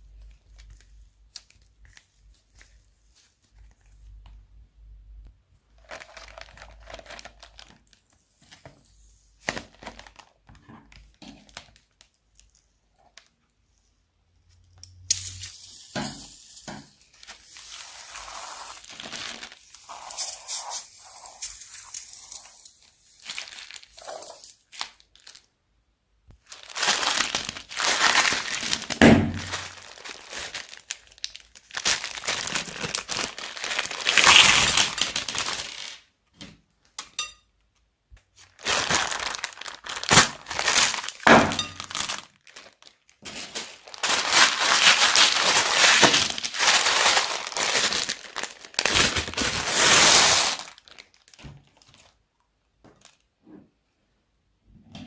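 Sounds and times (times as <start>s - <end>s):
plastic bags crinkling: 5.7s - 8.8s, 9.4s - 13.4s, 15.3s - 25.5s, 26.4s - 36.1s, 38.3s - 52.2s, 52.8s - 53.3s.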